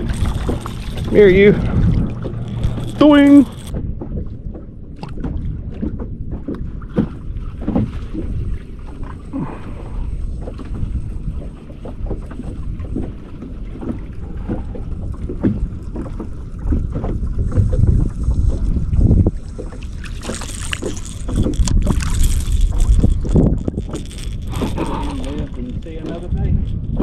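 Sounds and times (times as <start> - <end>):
wind buffeting microphone: 0.0 - 27.0.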